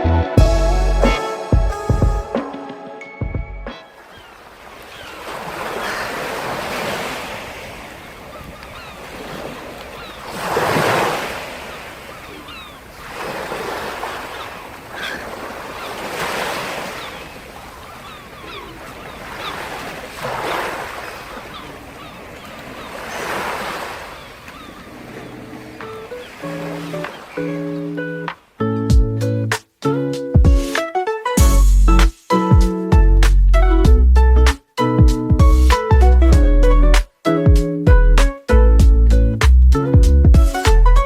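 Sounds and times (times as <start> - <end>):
waves washing on shore: 3.9 - 28.6.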